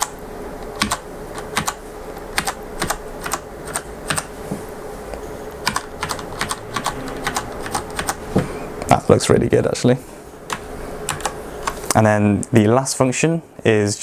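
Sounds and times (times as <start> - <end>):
faint steady hum: 0.0 - 14.0
mechanical keyboard keys clacking: 0.8 - 1.8, 2.4 - 4.3, 5.6 - 8.2, 10.5 - 11.8.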